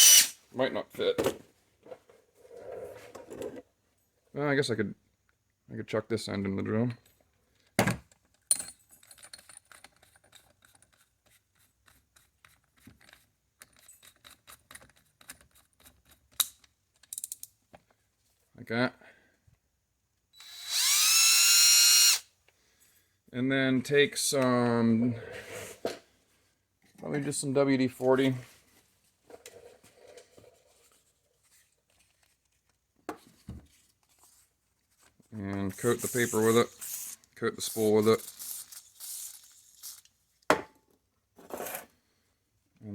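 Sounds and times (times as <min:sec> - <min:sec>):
rustling and handling noise: 0:25.2 - 0:40.5.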